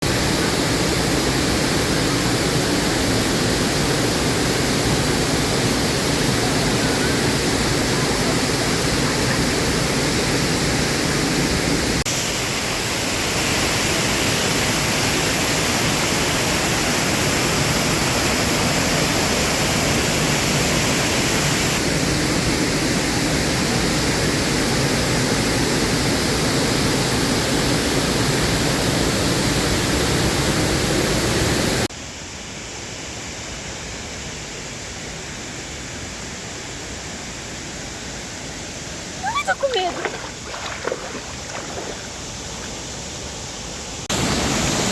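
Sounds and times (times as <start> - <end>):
waterfall rushing: 39.2 - 42.9, 44.1 - 44.9.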